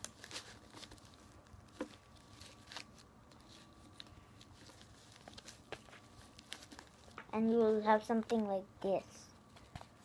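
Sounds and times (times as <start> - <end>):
paper being folded: 0.0 - 7.8.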